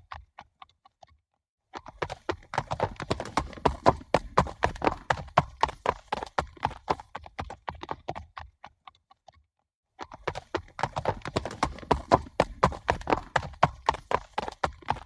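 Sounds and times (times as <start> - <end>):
horses galloping: 1.8 - 8.5, 10.0 - 15.0.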